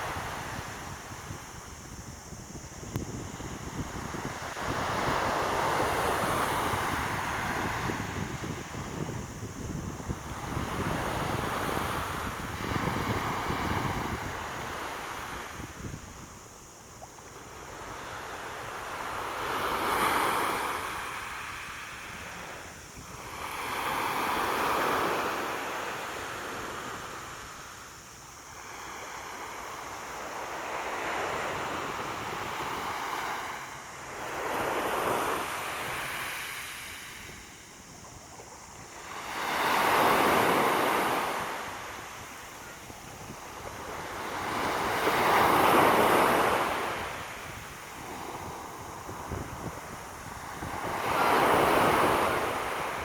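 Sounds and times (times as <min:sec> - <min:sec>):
sea waves washing onto shore: 0:28.5 - 0:53.0.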